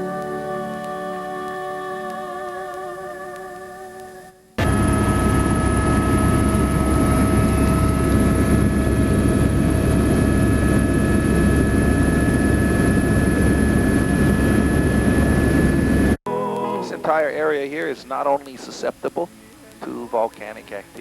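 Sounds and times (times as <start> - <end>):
helicopter engine and rotor drone: 4.6 - 16.2
whining tones: 4.6 - 17.0.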